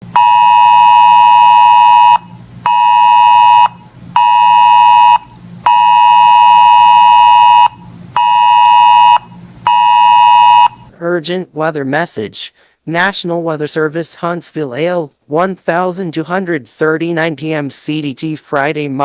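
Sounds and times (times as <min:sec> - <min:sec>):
alarm buzzer beeping: 0:00.1 - 0:10.9.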